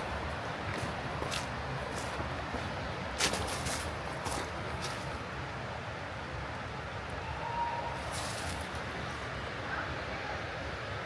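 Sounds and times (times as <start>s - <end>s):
footsteps on a trail: 0.0s - 5.4s, 8.0s - 9.2s
rushing background noise: 0.0s - 11.0s.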